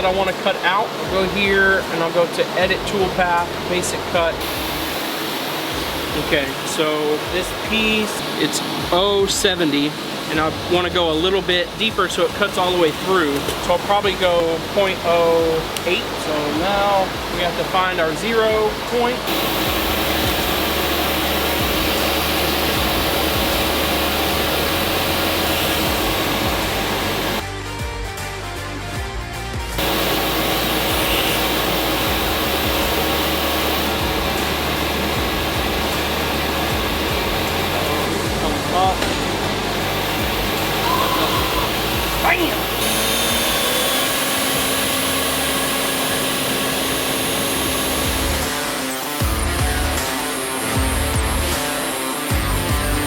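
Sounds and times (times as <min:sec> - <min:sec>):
music: 0:00.0 - 0:53.0
machine hum tones: 0:03.8 - 0:27.4, 0:29.8 - 0:53.0
machine rushing air: 0:04.4 - 0:10.4, 0:18.7 - 0:27.4, 0:29.8 - 0:52.4
router spindle cutting sheet: 0:10.7 - 0:27.4, 0:29.8 - 0:52.3.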